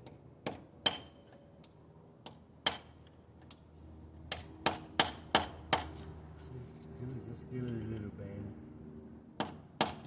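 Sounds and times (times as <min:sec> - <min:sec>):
hammer striking metal tool: 0:04.3 - 0:06.0.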